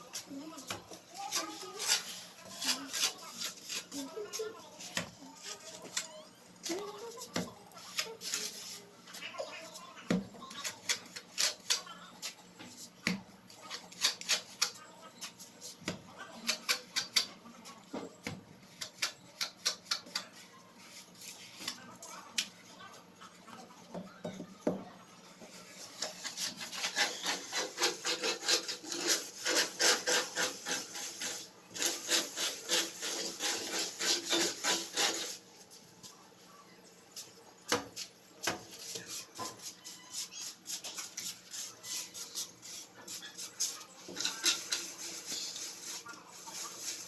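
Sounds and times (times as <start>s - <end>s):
plastering float scraping plaster: 26.0s - 35.4s.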